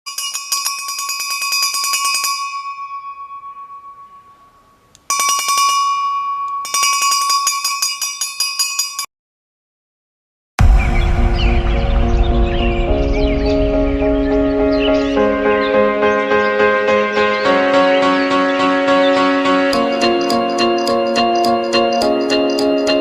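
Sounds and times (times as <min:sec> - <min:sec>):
music: 0:10.6 - 0:23.0.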